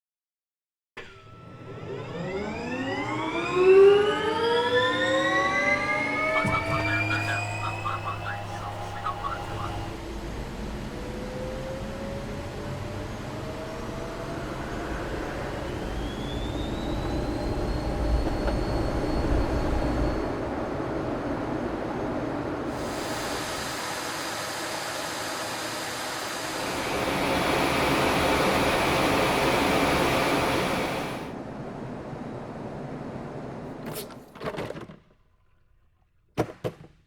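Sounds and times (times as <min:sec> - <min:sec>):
jet engine turbine whine: 0:01.0 - 0:34.0
low engine rumble: 0:06.2 - 0:22.7.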